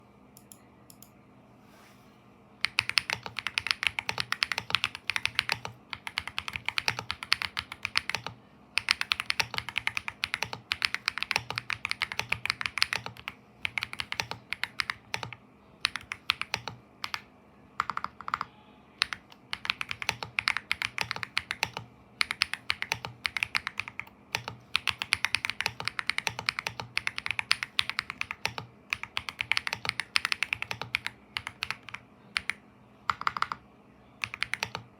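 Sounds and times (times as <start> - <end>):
mechanical keyboard typing: 2.6 - 33.6, 34.2 - 34.9.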